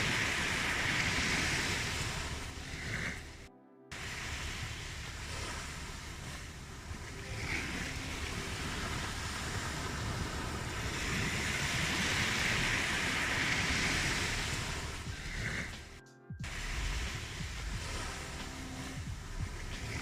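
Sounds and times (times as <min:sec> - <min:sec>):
ocean waves washing in: 0:00.0 - 0:20.0.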